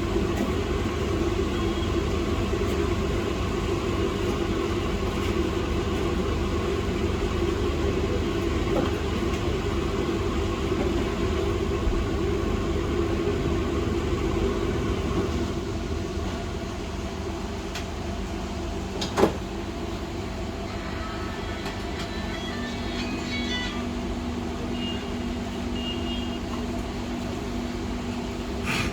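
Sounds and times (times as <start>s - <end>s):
mechanical hum with rush: 0.0s - 28.9s.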